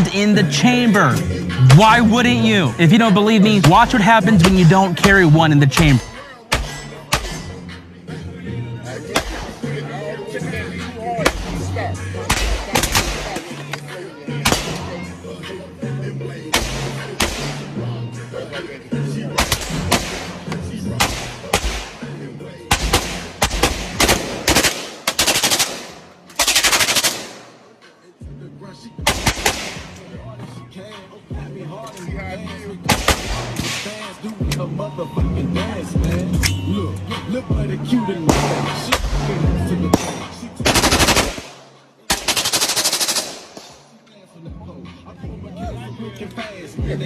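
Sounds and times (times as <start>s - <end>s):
single gunshots: 12.3s - 13.4s, 14.4s - 14.9s, 16.5s - 17.6s, 19.4s - 20.3s, 21.0s - 22.0s, 22.7s - 27.5s, 29.1s - 29.9s, 32.9s - 34.1s, 38.3s - 43.8s
automatic gunfire bursts: 22.7s - 27.5s, 29.1s - 29.9s, 40.0s - 43.6s.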